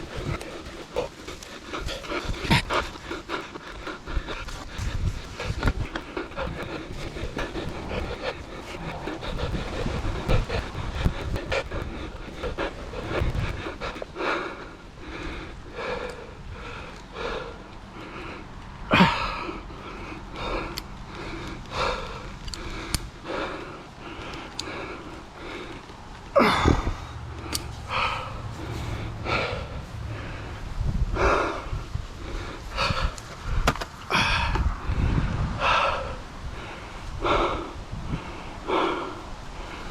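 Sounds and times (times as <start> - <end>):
heavy irregular breathing: 0.0 - 39.9.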